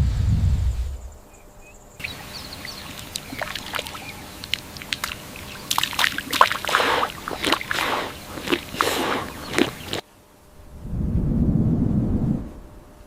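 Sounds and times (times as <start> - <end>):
water sloshing and splashing: 2.0 - 10.0.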